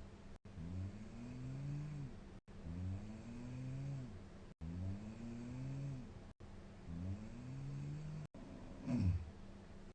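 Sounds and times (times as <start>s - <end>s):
woman snoring: 0.6s - 6.1s, 6.9s - 9.3s.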